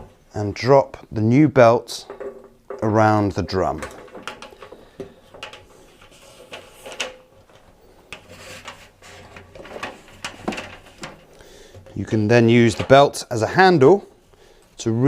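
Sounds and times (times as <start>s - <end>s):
parts clicking and scraping: 1.9s - 13.3s.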